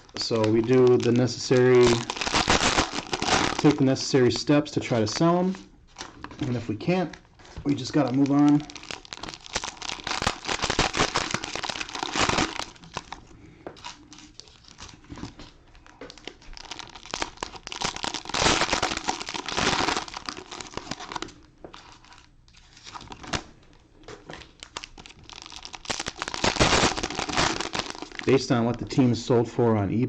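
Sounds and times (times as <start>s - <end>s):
cellophane wrappers tearing and crinkling: 0.0s - 4.0s, 7.7s - 13.2s, 13.8s - 23.4s, 24.3s - 28.4s.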